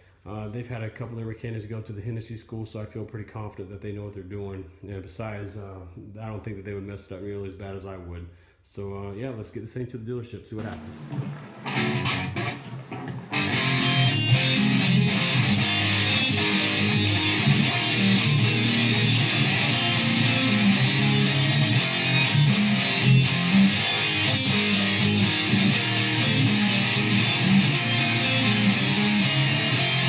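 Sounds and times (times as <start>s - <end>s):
rock music with electric guitar: 10.6s - 30.0s.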